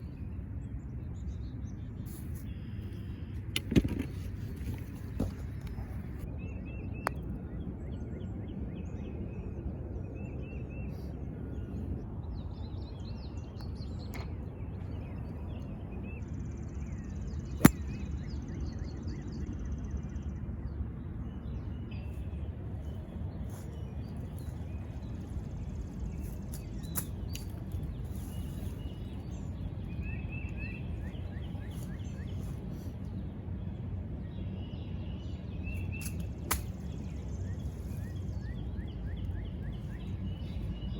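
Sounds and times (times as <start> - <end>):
golf club striking ball: 17.6 - 18.0
birds chirping: 21.2 - 40.9.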